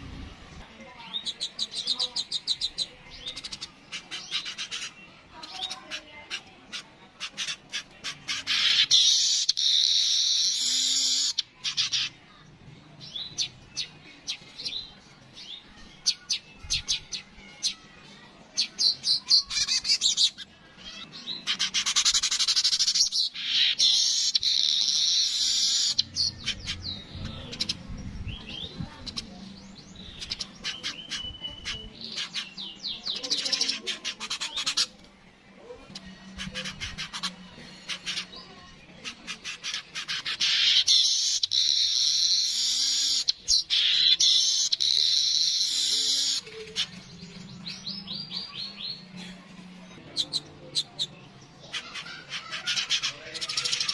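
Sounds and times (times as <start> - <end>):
weaver bird singing: 8.3 - 12.1, 18.6 - 34.9, 40.2 - 49.1.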